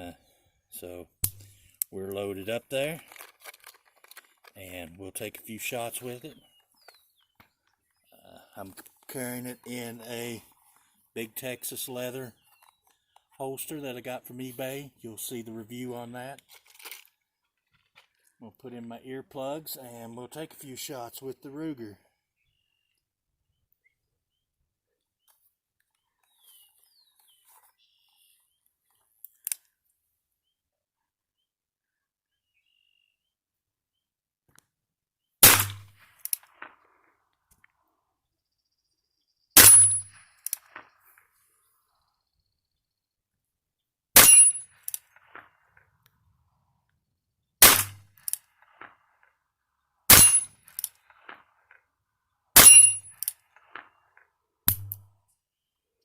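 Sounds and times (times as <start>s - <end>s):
bird chirps: 6.3s - 8.5s, 12.3s - 13.4s, 25.9s - 28.7s, 31.4s - 34.0s
sharp double click: 54.7s - 55.0s.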